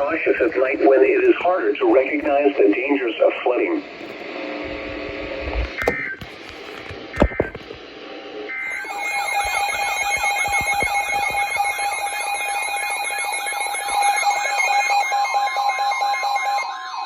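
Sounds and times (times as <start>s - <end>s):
steady alarm tone: 8.5s - 17.0s.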